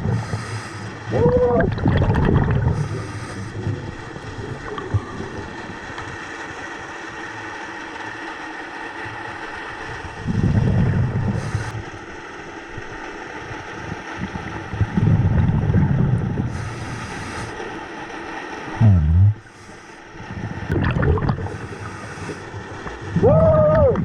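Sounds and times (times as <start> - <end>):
exhaled bubbles rumbling: 0.0 - 7.0, 9.8 - 12.1, 13.6 - 24.0
regulator inhalation hiss: 2.8 - 3.7, 16.5 - 17.7, 21.5 - 22.6.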